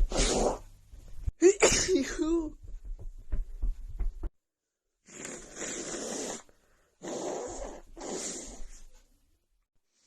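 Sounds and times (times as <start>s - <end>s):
congested nose breathing: 5.0s - 8.8s.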